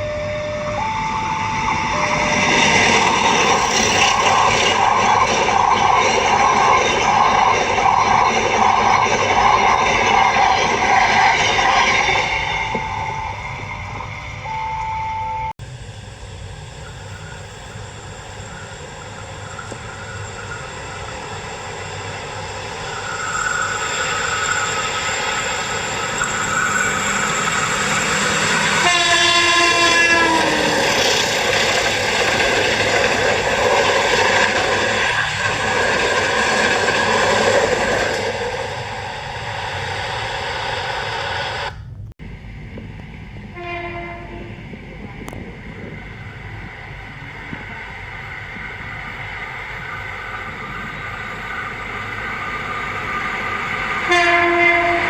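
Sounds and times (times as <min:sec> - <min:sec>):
locomotive horn: 0:00.0 - 0:03.2, 0:28.7 - 0:30.9, 0:43.5 - 0:44.6, 0:54.0 - 0:55.0
train running noise and rail clatter: 0:00.0 - 0:55.0.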